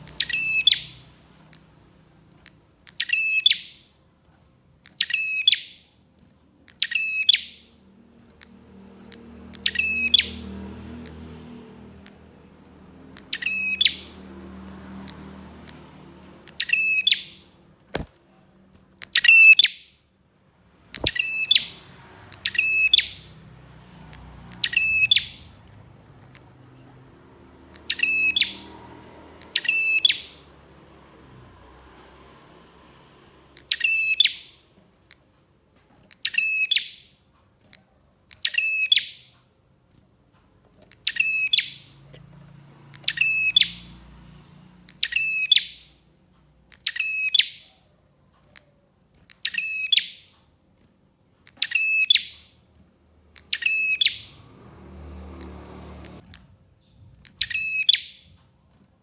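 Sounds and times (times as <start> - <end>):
sharp clicks: 0.0 - 20.0, 20.8 - 44.0, 48.4 - 56.5
bird chattering calls: 20.9 - 23.4.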